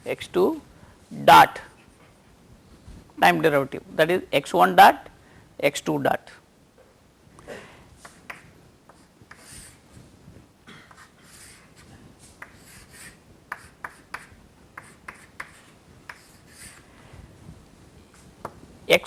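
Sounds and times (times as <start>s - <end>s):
pen scratching on paper: 8.9s - 9.8s, 11.0s - 16.9s
pen tapping: 13.5s - 16.4s.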